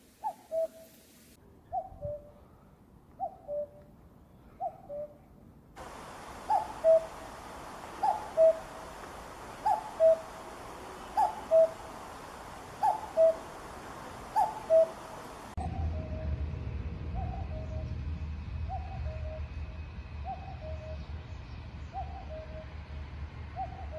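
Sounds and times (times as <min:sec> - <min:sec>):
cuckoo calling: 0:00.0 - 0:01.0, 0:05.8 - 0:16.0
steady hiss: 0:00.0 - 0:01.4, 0:05.8 - 0:15.6.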